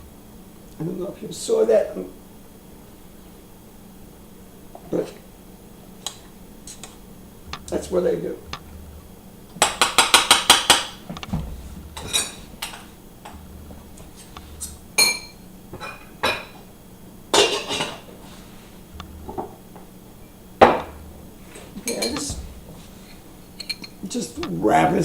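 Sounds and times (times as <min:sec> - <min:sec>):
spoon clinking against pot: 0:14.6 - 0:16.6, 0:23.6 - 0:24.0.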